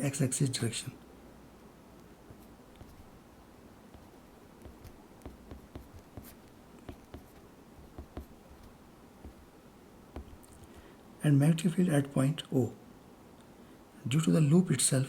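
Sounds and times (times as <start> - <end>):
faint steady hiss: 0.0 - 15.0
pen scratching on paper: 2.3 - 3.2, 3.9 - 9.5, 10.2 - 10.7.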